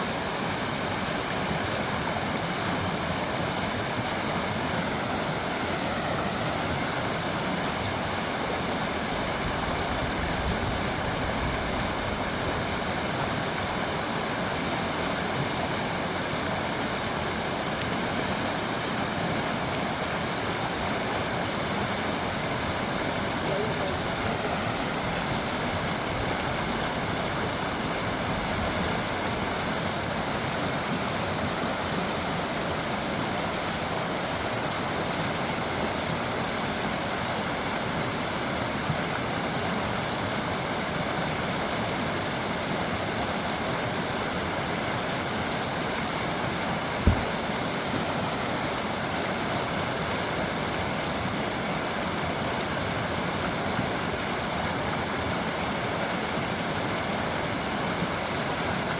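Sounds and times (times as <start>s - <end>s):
creek water babbling over stones: 0.0s - 58.9s
low thump: 47.0s - 47.4s.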